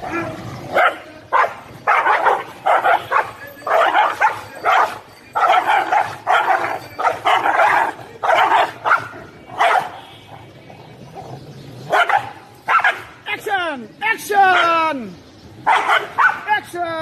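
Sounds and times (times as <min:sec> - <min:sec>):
dog barking: 0:00.0 - 0:10.0, 0:11.9 - 0:13.1, 0:15.6 - 0:16.5.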